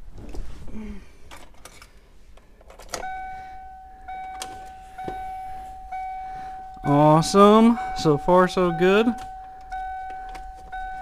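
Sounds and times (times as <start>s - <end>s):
dashboard warning chime: 2.9s - 11.0s.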